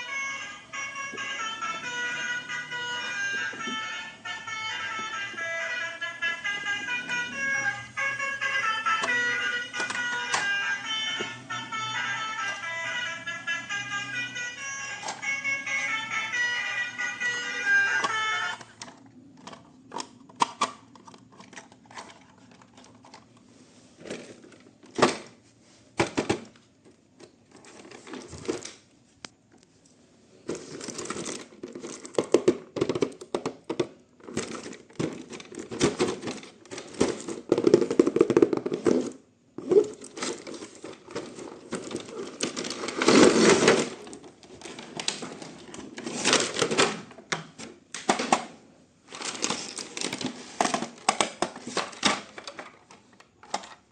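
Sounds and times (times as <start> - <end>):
plastic and cardboard crinkling: 26.0 - 28.9, 30.4 - 53.9
clicks and knocks of packaging: 30.5 - 48.5, 49.1 - 53.8.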